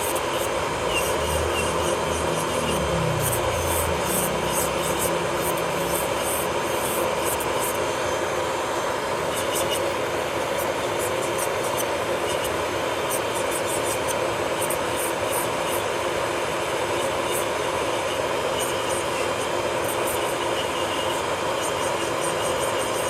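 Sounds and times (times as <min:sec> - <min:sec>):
drill bit scratching nail: 0:00.0 - 0:07.8, 0:09.2 - 0:15.9, 0:16.9 - 0:23.0
electric nail drill whining: 0:00.0 - 0:23.0.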